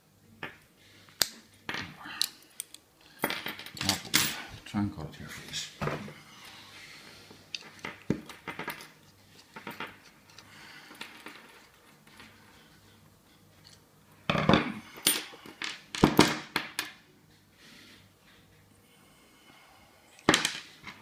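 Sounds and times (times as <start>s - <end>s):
metal padlock and tools clinking: 3.5s - 4.4s.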